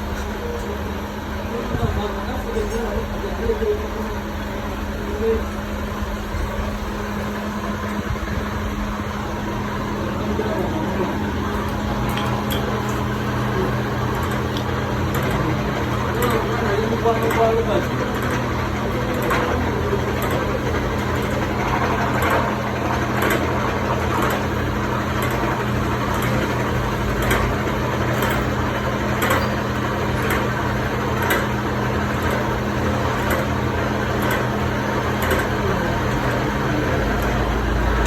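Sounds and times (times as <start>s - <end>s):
milling machine motor hum: 0.0s - 38.0s.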